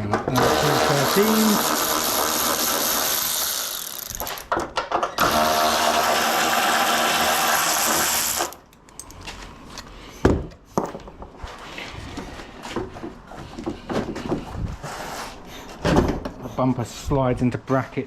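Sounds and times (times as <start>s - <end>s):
power drill running: 0.3s - 4.5s, 5.2s - 8.6s.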